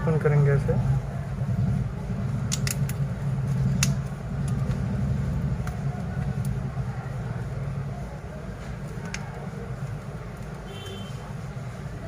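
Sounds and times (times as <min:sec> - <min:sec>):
low engine-like rumble: 0:00.0 - 0:12.0
small tools clicking: 0:02.5 - 0:03.0.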